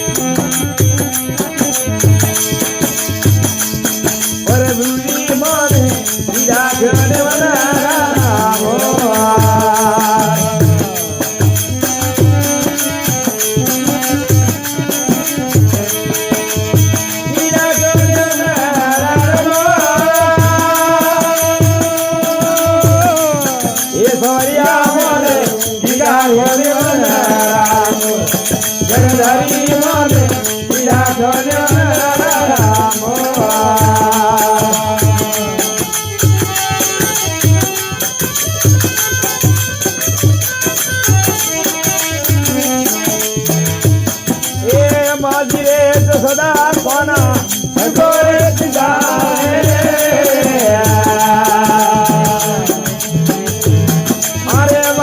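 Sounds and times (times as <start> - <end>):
rattling percussion: 0.0 - 55.0
steady drum beat: 0.0 - 55.0.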